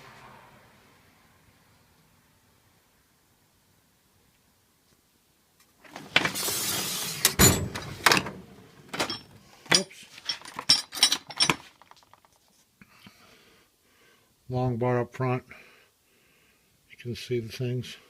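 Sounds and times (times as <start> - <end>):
tool drawer sliding open: 5.8 - 9.4
metal tools clanking: 8.9 - 12.1.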